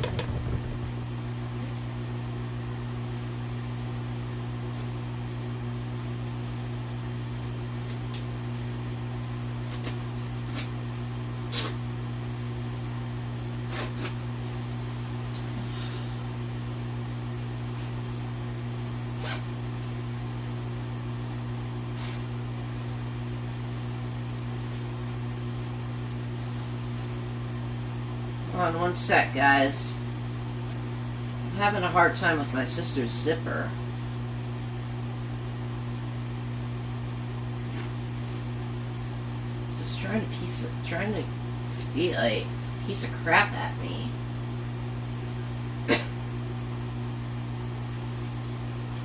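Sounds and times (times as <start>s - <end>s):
electric motor hum: 0.0s - 32.1s.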